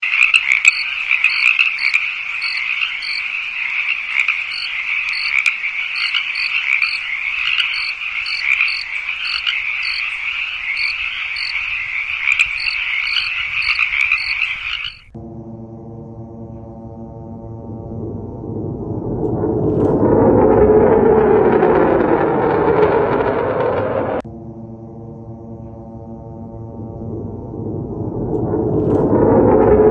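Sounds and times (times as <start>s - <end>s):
frogs trilling: 0.0s - 15.2s
low droning hum: 15.0s - 29.9s.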